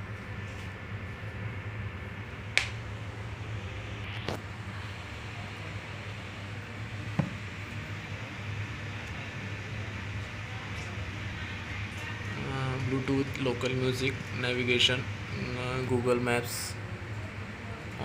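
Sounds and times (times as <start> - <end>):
low hum: 0.0 - 17.8.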